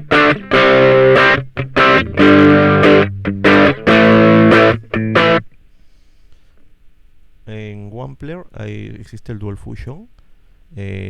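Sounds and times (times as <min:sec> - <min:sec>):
distorted electric guitar chords: 0:00.0 - 0:05.6.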